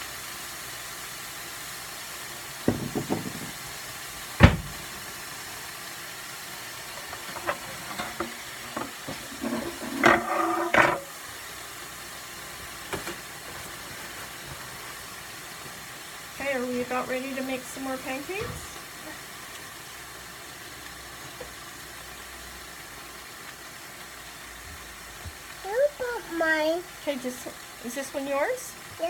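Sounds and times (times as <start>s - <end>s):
food sizzling in oiled pans: 0.0s - 29.0s
utensils clattering on cookware: 7.0s - 11.1s.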